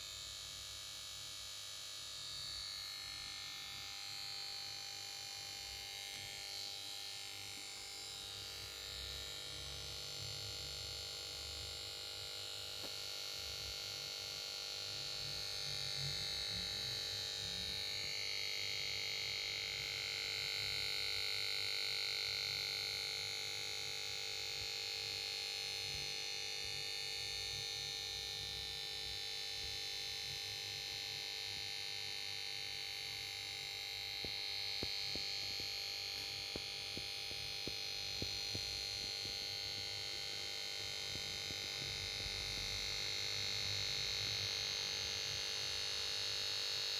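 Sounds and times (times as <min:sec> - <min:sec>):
high-pitched electronic whine: 0:32.5 - 0:46.9.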